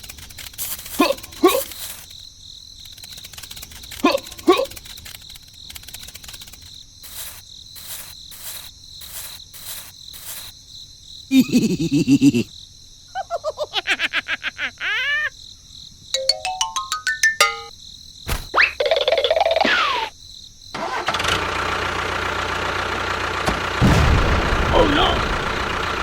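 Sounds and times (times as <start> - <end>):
cricket chirping: 0.0 - 16.1, 17.7 - 20.8
cartoon sound effects: 16.2 - 17.7.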